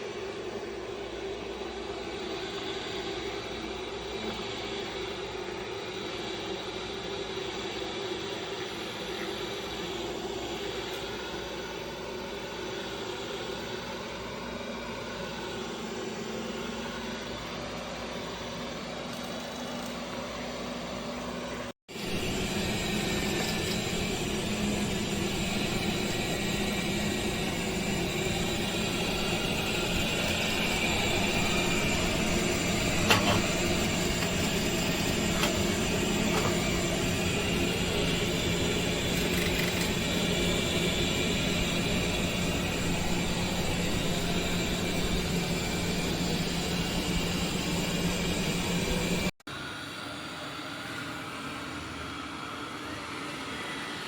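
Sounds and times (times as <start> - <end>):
robot vacuum motor whirring: 22.0 - 49.1.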